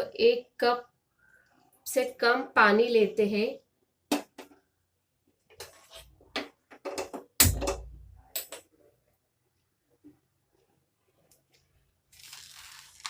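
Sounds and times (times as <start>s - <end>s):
deep thud: 7.4s - 8.2s.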